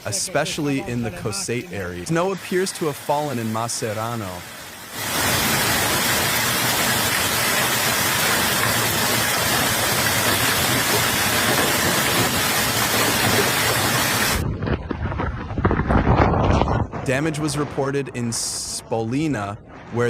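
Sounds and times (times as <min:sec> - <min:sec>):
heavy rain downpour: 0:00.0 - 0:15.5.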